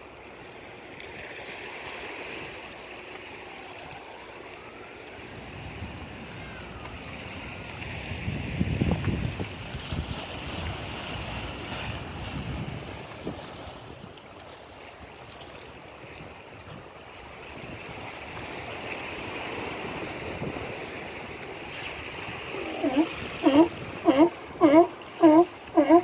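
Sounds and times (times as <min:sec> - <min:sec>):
ocean surf washing: 0:00.0 - 0:13.6, 0:17.4 - 0:26.0
wind rumbling on microphone: 0:05.2 - 0:14.3, 0:15.9 - 0:26.0.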